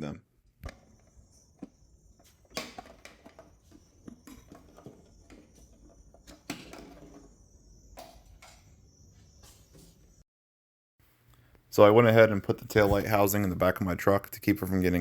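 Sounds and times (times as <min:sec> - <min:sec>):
plastic clicks and knocks: 0:00.6 - 0:08.7.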